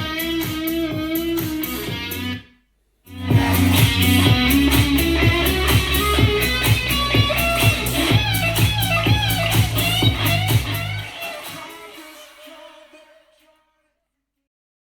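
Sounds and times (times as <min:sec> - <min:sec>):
guitar-led instrumental music: 0:00.0 - 0:02.4, 0:03.1 - 0:12.4.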